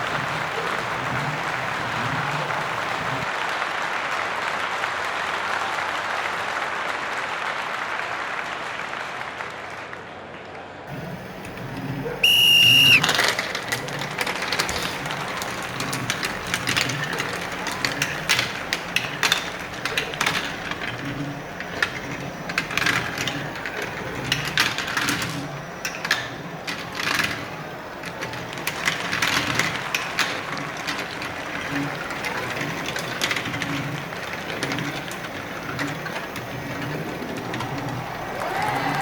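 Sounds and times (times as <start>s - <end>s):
marbles clattering on a track: 11.0s - 39.0s.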